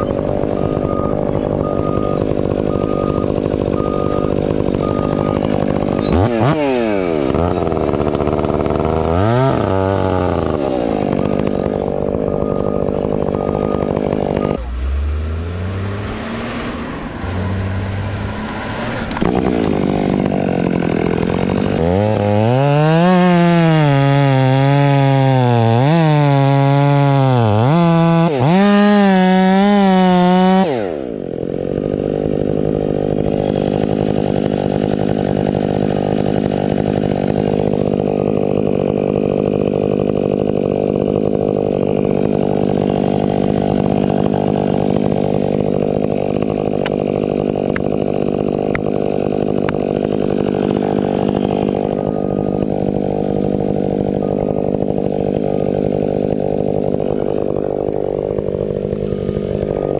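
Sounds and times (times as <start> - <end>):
chainsaw running at high revs: 0.0 - 59.9.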